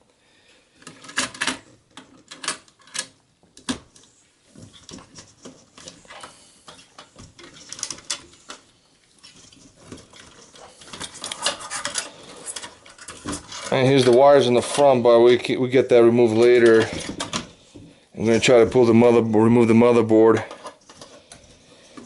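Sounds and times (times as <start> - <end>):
computer parts clicking and rattling: 0.8 - 4.0, 4.8 - 8.6.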